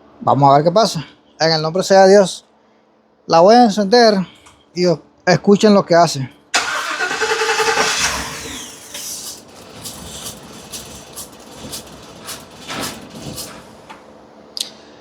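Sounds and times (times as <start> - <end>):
engine starting and idling: 6.6 - 14.2.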